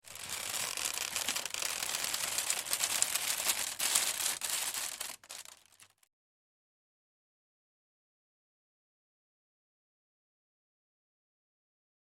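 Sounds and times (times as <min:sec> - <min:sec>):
wicker crackling and crunching: 0:00.0 - 0:06.0.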